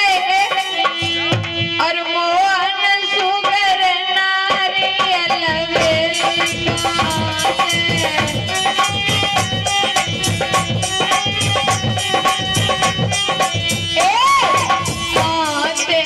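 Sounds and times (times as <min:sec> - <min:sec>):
hand drum beat: 0:04.5 - 0:16.0.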